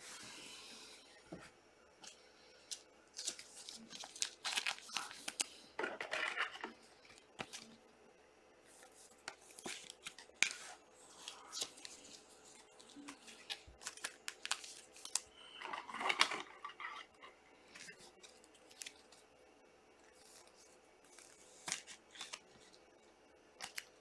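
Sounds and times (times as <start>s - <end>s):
wrapper rustling and crinkling: 3.2s - 7.7s.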